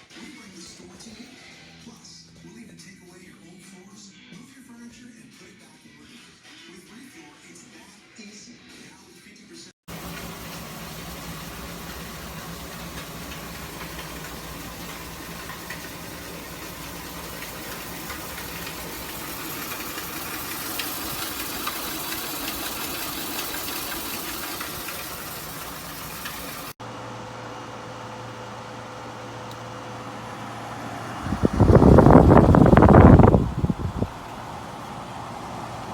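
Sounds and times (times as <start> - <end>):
dehumidifier fan rushing: 9.9 - 35.9
low compressor hum: 9.9 - 35.9.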